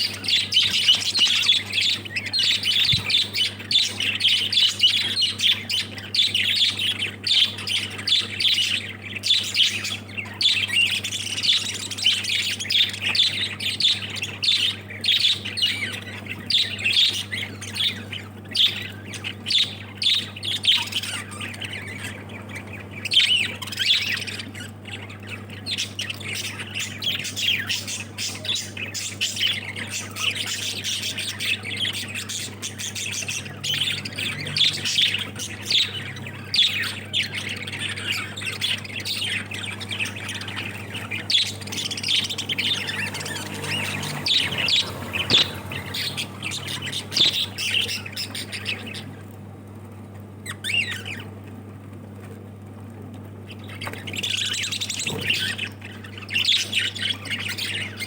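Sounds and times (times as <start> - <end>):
birds squawking and chirping: 0.0 - 58.0
steady low hum: 33.0 - 50.9.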